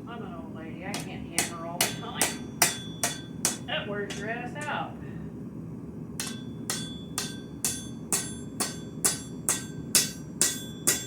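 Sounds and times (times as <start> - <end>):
low steady rumble: 0.0 - 11.0
hammer striking steel on anvil: 1.0 - 3.7, 6.2 - 11.0.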